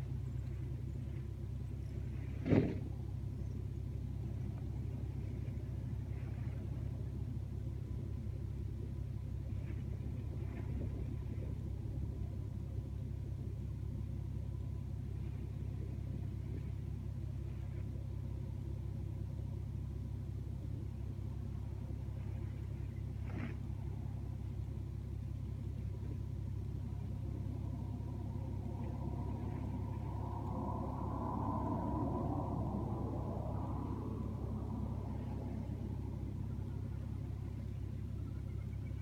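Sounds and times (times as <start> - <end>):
humming tone: 20.9 - 39.0
wind buffeting microphone: 26.6 - 38.2.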